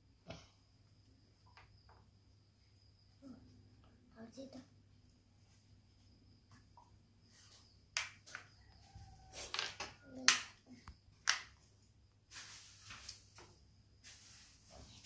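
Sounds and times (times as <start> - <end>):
soft rustling: 12.3 - 15.0.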